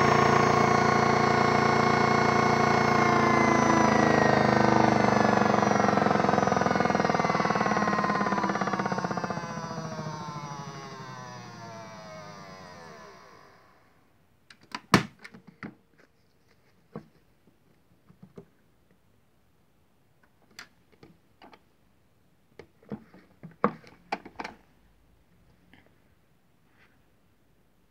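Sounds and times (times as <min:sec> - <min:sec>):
toy washing machine motor winding down: 0:00.0 - 0:14.0.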